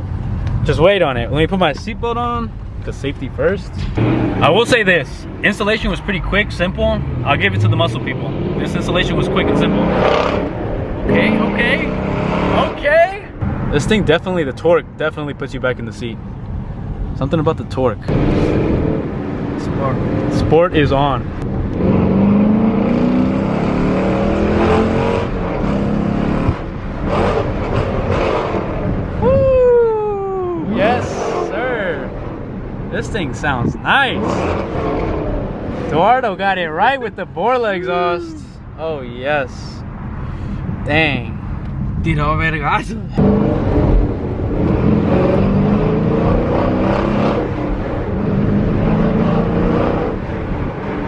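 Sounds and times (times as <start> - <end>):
car engine accelerating: 3.4 - 14.2, 18.1 - 29.3, 41.0 - 51.0.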